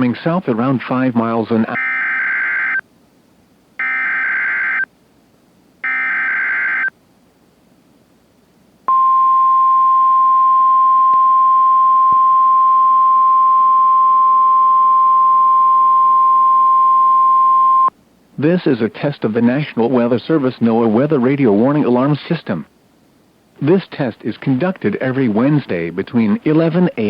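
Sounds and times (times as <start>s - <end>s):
loud steady warning alarm tone: 1.7s - 2.8s, 3.8s - 4.9s, 5.8s - 6.9s.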